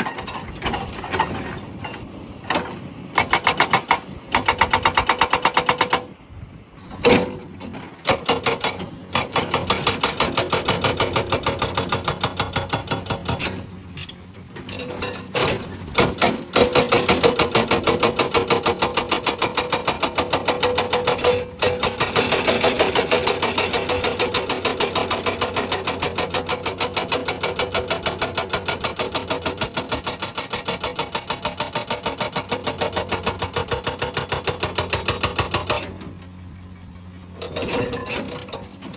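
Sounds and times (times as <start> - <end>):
hydraulic breaker hammering rock: 0.0 - 6.2, 6.8 - 36.2.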